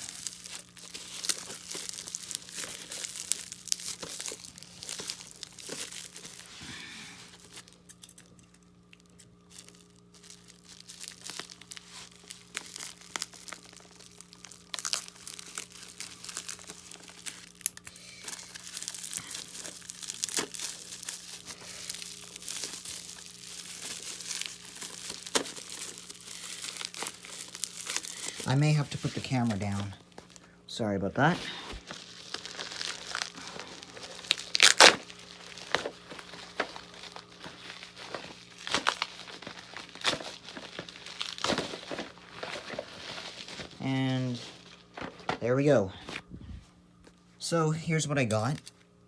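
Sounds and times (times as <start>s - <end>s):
bubble wrap crinkling and tearing: 0.0s - 46.3s, 48.2s - 49.0s
faint steady hum: 0.0s - 49.0s.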